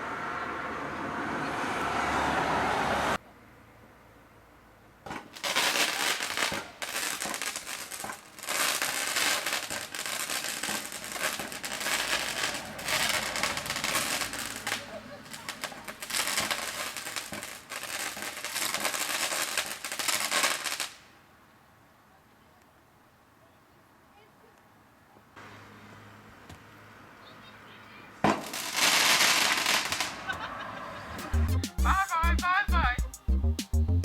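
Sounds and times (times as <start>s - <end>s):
fireworks crackling: 5.2s - 21.2s, 28.2s - 33.0s.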